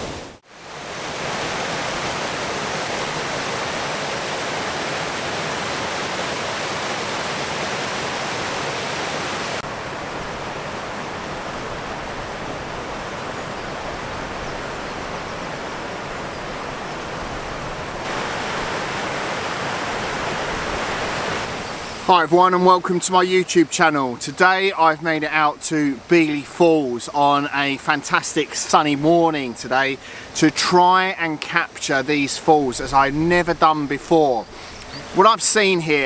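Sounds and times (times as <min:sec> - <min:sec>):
water rushing over a weir: 0:00.0 - 0:22.3.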